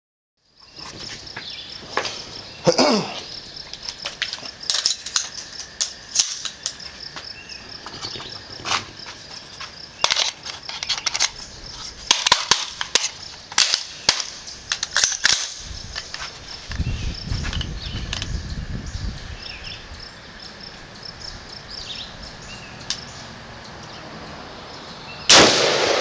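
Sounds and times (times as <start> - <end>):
gunshots: 25.3 - 26.0.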